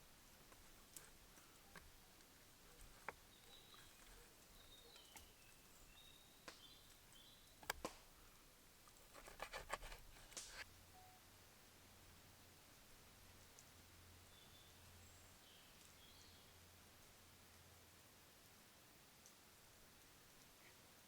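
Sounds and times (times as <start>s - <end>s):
faint high chirps: 10.9s - 11.3s.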